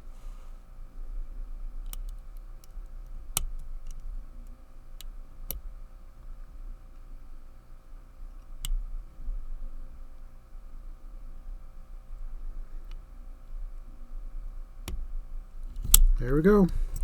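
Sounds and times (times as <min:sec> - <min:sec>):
metallic clicks of lock picking: 0:01.8 - 0:02.7, 0:15.7 - 0:16.1.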